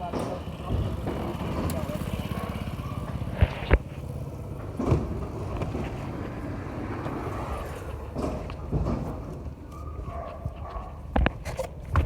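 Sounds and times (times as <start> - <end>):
motorcycle engine running: 0.0 - 12.0
street traffic noise: 0.0 - 12.0
sharp knocks: 7.7 - 9.6.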